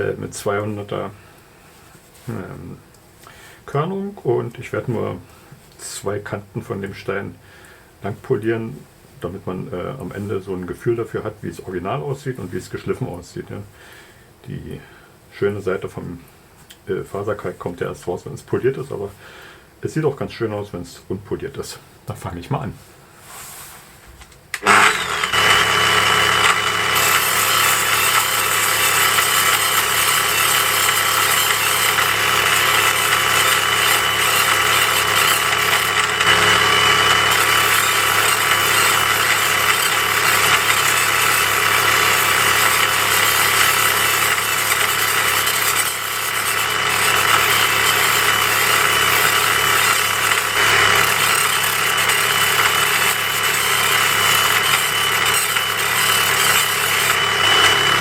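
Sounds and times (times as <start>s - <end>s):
grinding machine whine: 24.6s - 58.0s.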